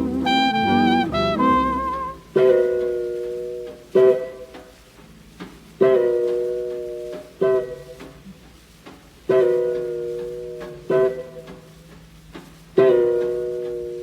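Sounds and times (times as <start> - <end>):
swing orchestra chords: 0.0 - 2.5.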